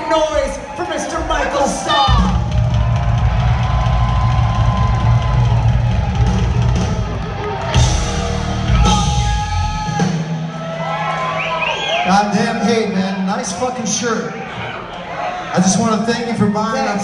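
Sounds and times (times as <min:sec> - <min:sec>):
drums pounding: 0:00.0 - 0:12.4
rock band playing: 0:01.2 - 0:13.0.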